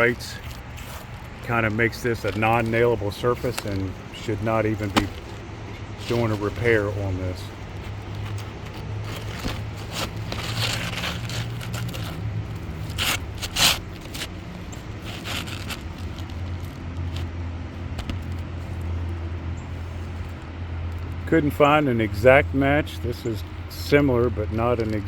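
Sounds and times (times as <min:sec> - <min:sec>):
scraping on shingle roof: 0:00.0 - 0:18.8.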